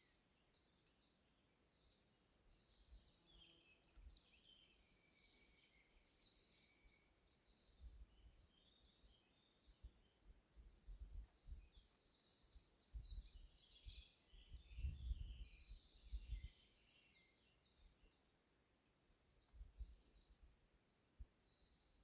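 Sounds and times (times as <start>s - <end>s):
songbird singing: 0.0s - 22.0s
wind rumble on microphone: 10.6s - 11.8s, 12.7s - 16.6s.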